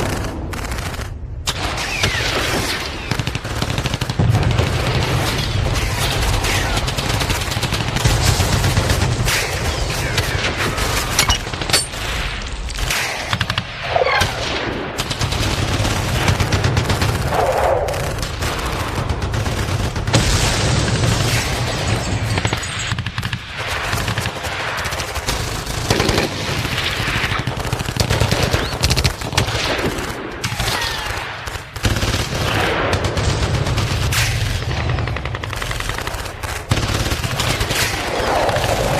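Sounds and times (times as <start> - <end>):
machine-gun and rifle fire: 0.0 - 38.9.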